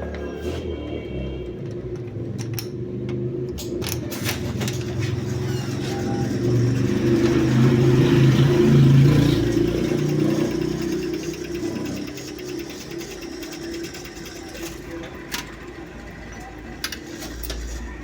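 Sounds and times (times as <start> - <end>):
jukebox motor hum: 1.4 - 18.0
jukebox mechanism clicks: 1.8 - 5.3.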